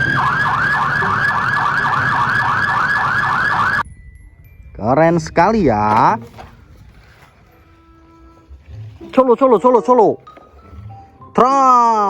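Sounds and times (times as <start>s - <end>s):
electronic siren yelping: 0.0s - 3.8s.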